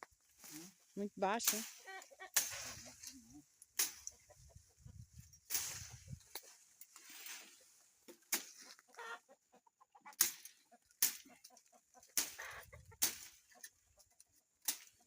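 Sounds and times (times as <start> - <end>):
leafy swishes: 0.2 - 4.0, 5.2 - 8.8
blade chopping branches: 1.2 - 4.3, 5.2 - 8.8, 10.1 - 13.6, 14.6 - 15.0
hens clucking: 1.5 - 15.0.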